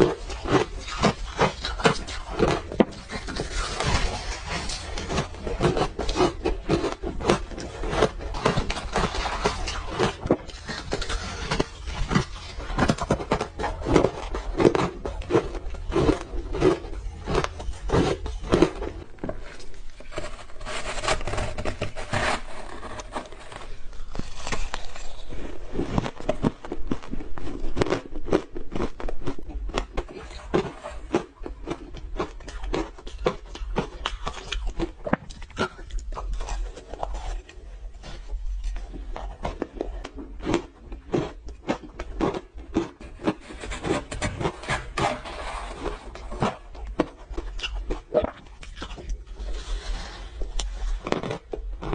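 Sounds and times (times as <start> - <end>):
crunching and chewing ice: 0.0 - 51.9.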